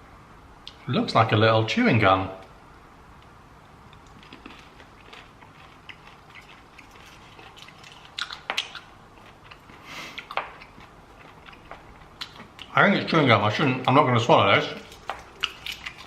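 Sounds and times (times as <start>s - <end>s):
gum crackles: 3.9s - 12.8s, 14.7s - 16.0s
person chewing gum: 3.9s - 12.8s, 14.8s - 16.0s.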